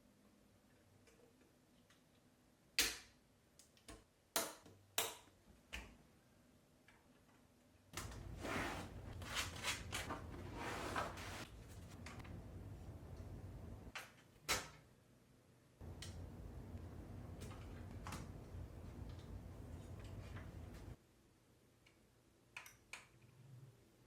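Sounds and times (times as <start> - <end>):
rustling and scraping: 8.0 - 12.2.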